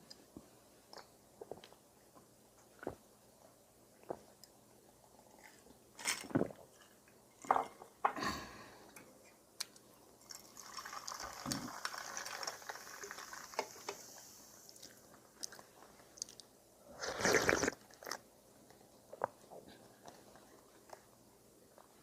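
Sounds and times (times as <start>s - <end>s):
slurping noodles: 16.9s - 18.2s.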